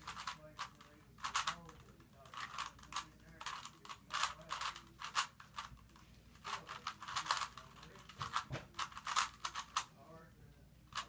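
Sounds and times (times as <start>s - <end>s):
puzzle cube clicking as twisted: 2.3s - 5.7s, 6.7s - 9.9s.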